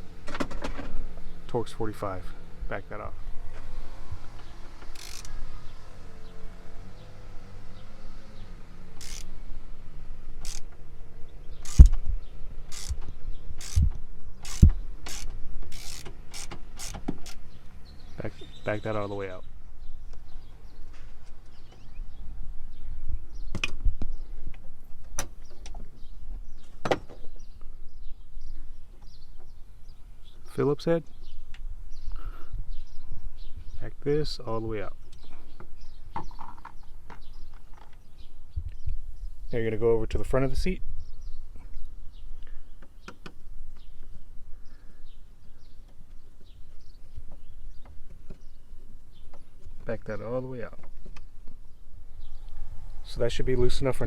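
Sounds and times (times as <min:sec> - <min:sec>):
small birds chirping faintly: 0:01.0 - 0:54.0
metallic tool clicks: 0:05.0 - 0:05.4, 0:10.4 - 0:10.7, 0:13.6 - 0:17.4.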